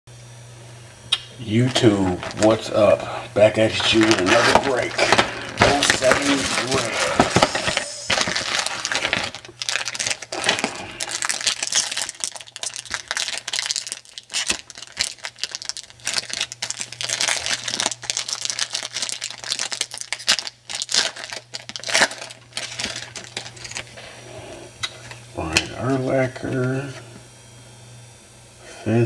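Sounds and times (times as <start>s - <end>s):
foil wrappers crinkling and tearing: 1.6s - 2.9s, 3.5s - 24.0s.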